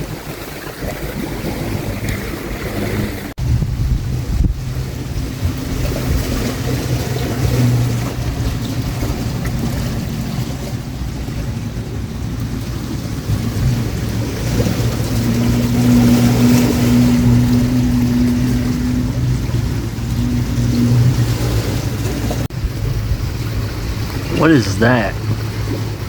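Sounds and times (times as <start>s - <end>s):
wind buffeting microphone: 0.0s - 10.1s
motorboat engine running: 0.0s - 26.0s.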